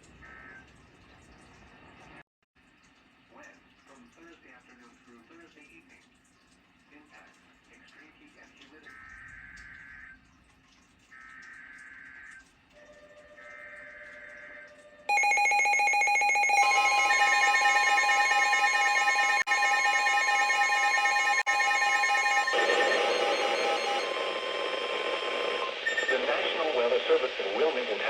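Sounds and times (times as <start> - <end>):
loud alert tone: 15.1 - 26.1
data header screech: 15.2 - 26.9.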